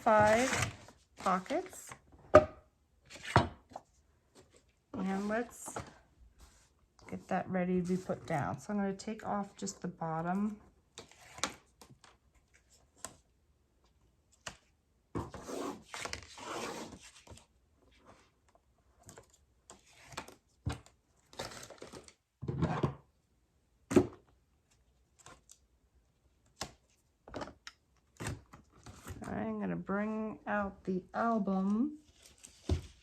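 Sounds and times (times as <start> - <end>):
paper rustling and scraping: 0.0 - 1.7.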